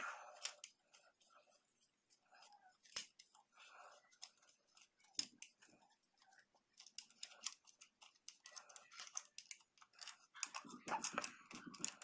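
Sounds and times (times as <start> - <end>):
vise parts clicking and knocking: 6.7 - 12.0.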